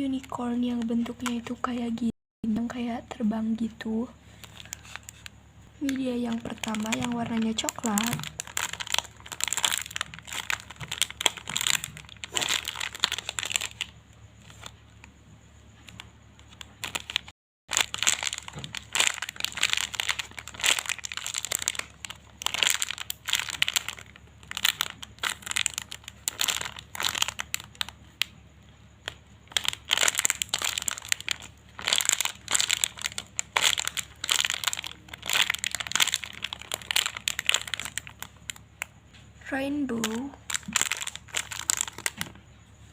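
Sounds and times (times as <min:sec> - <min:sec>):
plastic packaging crinkling: 0:00.0 - 0:01.8, 0:04.3 - 0:15.1, 0:15.8 - 0:28.3, 0:29.0 - 0:38.9, 0:39.9 - 0:42.4.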